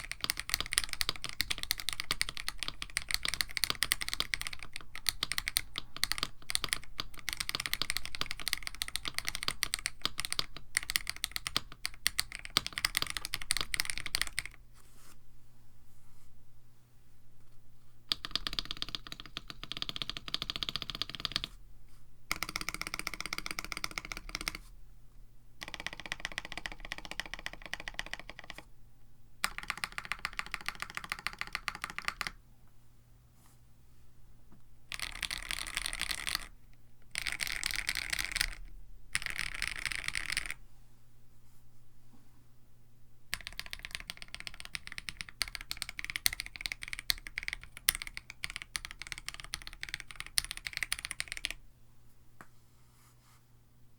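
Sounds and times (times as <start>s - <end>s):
typing on mechanical keyboard: 0.0s - 14.6s, 18.1s - 21.5s, 22.3s - 24.6s, 25.6s - 28.7s, 29.4s - 32.4s, 34.9s - 40.6s, 43.3s - 51.6s.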